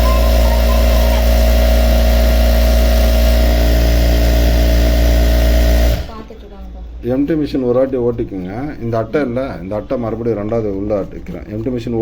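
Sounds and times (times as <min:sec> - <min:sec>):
sewing machine humming: 0:00.0 - 0:06.3.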